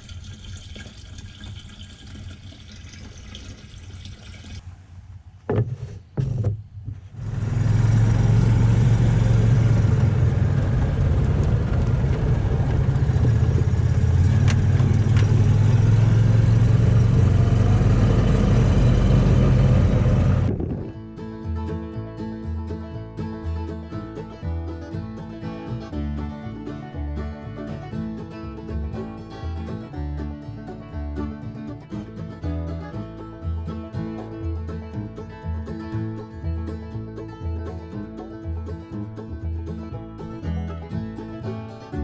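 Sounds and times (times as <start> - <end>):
thumps: 5.4 - 7.2
utv engine running: 6.2 - 21.0.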